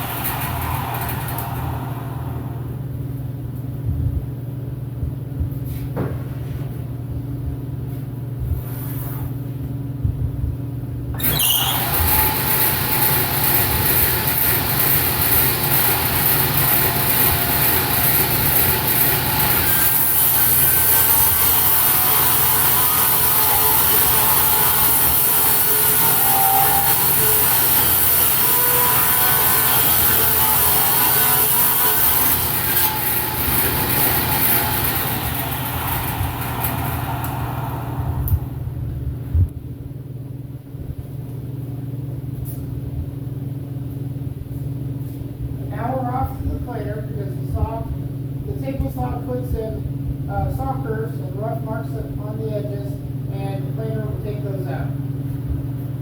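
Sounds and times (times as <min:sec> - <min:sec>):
table saw ripping a board: 0:11.2 - 0:37.4.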